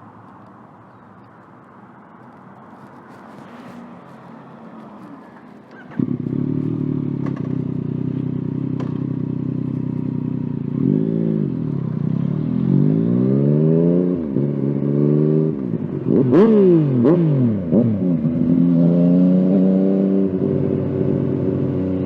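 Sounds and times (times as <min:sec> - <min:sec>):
motorcycle engine idling and revving: 0:00.0 - 0:22.0.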